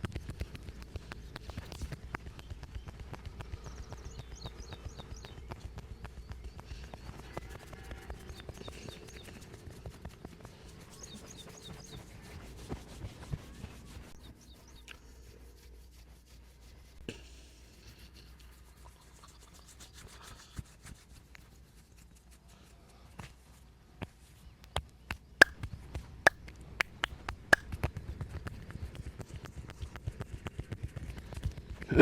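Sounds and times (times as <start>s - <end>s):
hands rubbing skin: 7.5s - 23.4s, 24.7s - 27.8s
quick light taps on skin: 24.6s - 27.8s.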